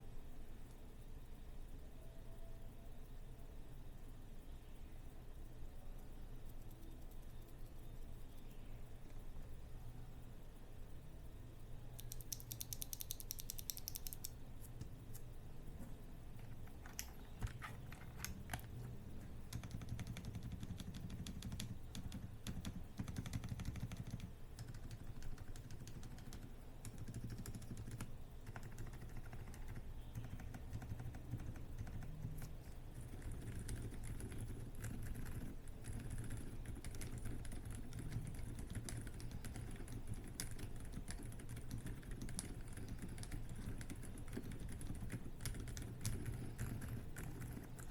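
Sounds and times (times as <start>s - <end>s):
muted mechanical keyboard typing: 12.0s - 14.4s, 16.4s - 47.9s.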